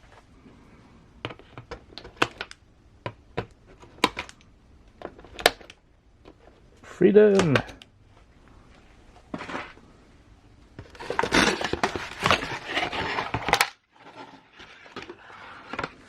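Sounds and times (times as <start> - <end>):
packaging rustling and clicking: 10.8 - 16.0.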